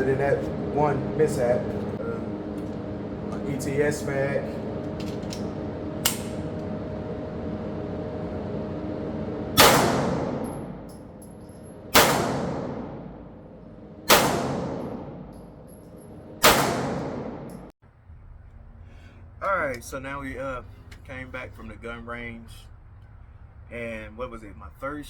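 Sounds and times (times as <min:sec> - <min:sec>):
pistol shots with echo: 0:09.6 - 0:10.5, 0:11.9 - 0:13.1, 0:14.1 - 0:15.3, 0:16.4 - 0:17.5.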